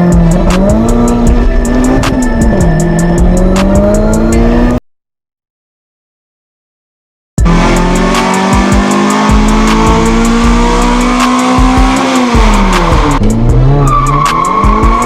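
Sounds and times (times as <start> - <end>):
electronic music: 0.0 - 4.8, 7.4 - 15.0.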